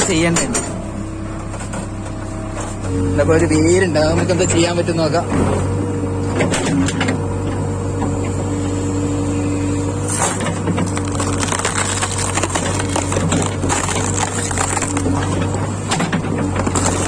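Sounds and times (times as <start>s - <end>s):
diesel engine under load: 0.0s - 17.0s
hydraulic whine: 0.0s - 17.0s
tree root crackling and splintering: 10.1s - 15.8s, 16.5s - 17.0s.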